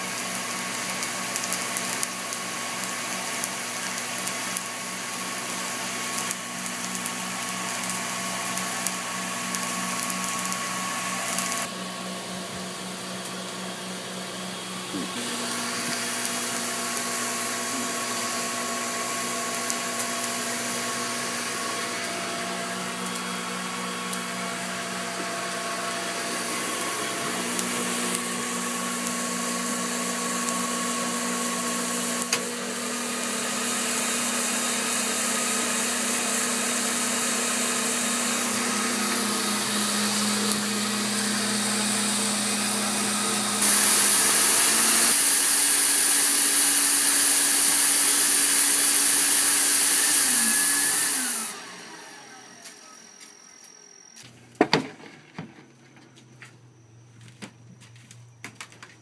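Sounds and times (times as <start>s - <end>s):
blower hiss: 0.0s - 54.3s
machine hum: 4.7s - 46.0s.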